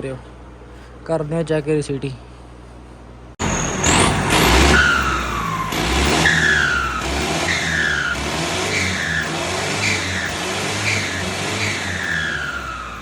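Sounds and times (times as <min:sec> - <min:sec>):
tractor diesel engine revving: 0:03.4 - 0:13.0
turbo whistling: 0:03.4 - 0:13.0.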